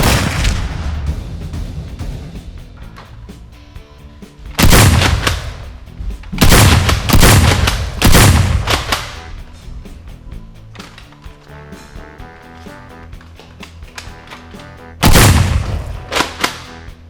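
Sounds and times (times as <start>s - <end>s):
booming gunshot-like blasts: 0.0s - 2.5s, 4.6s - 5.8s, 6.4s - 9.2s, 15.0s - 16.5s
background music: 0.0s - 17.0s.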